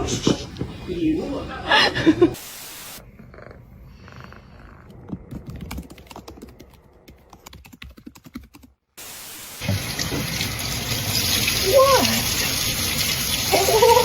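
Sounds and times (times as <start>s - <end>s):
steady hiss: 2.3s - 3.0s, 9.0s - 11.0s
rapid clicks and taps: 5.1s - 8.8s.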